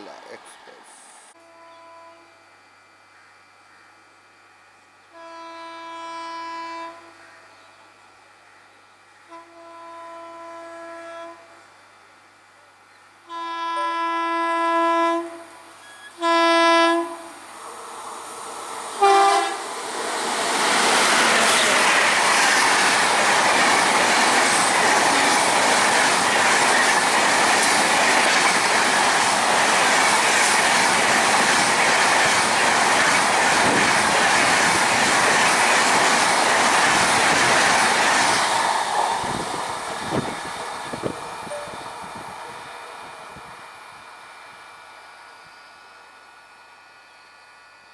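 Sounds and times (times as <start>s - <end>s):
train horn blasts: 1.4s - 2.6s, 5.0s - 7.5s, 9.2s - 11.7s, 13.2s - 17.5s, 19.0s - 19.7s
train wheels rushing on rails: 17.0s - 45.6s.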